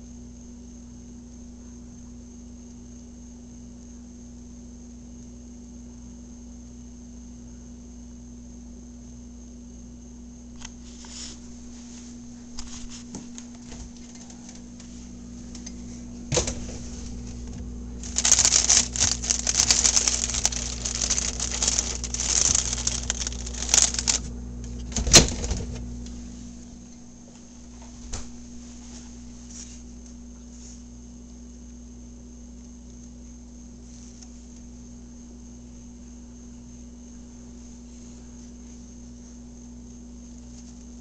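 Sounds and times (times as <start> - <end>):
steady low hum: 0.0 - 41.0
hamster nibbling and gnawing: 18.0 - 25.3.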